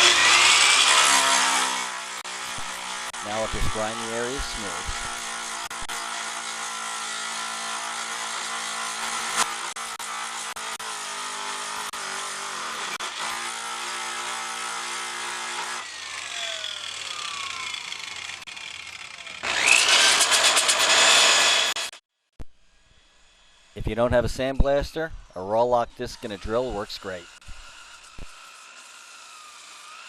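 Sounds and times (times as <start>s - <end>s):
electric grinder grinding metal: 0.0s - 22.0s, 24.6s - 30.0s
power tool whine on metal: 0.0s - 23.8s, 25.8s - 30.0s.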